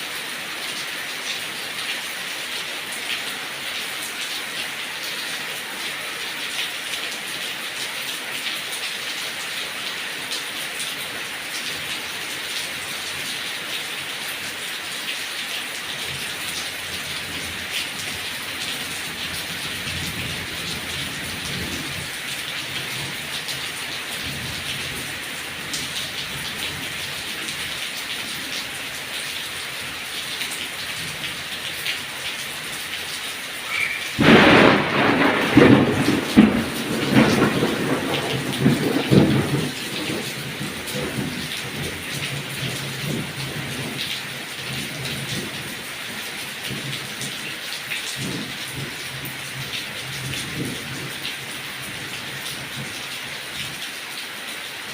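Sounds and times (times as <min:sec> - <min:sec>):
rain pattering on leaves: 0:00.0 - 0:54.9.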